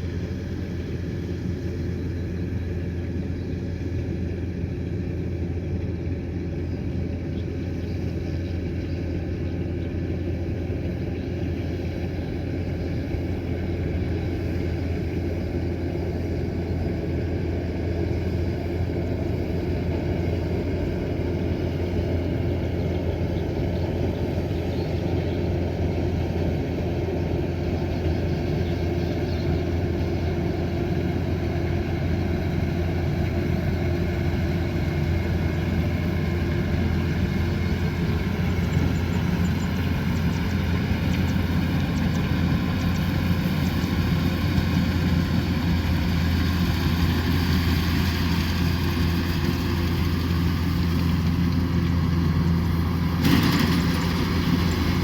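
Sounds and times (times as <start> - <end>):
combine harvester engine running: 0.0 - 55.0.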